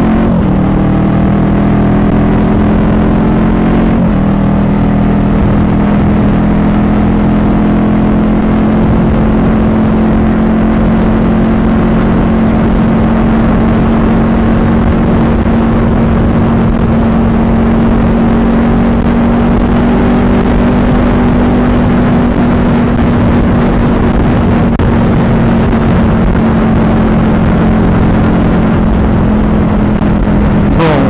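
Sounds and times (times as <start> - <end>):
motorcycle engine riding: 0.0 - 31.0
dense rushing noise: 8.6 - 31.0.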